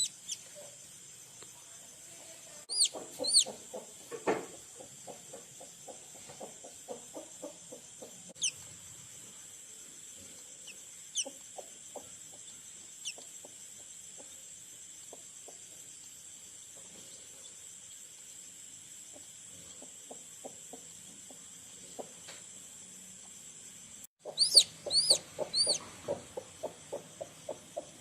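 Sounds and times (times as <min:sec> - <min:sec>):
chicks peeping: 0:00.0 - 0:00.5, 0:02.7 - 0:04.1, 0:04.8 - 0:08.6, 0:10.6 - 0:13.6, 0:24.2 - 0:27.8
hen clucking softly: 0:00.0 - 0:00.7, 0:02.7 - 0:08.6, 0:10.6 - 0:14.4, 0:19.1 - 0:22.3, 0:24.2 - 0:28.0.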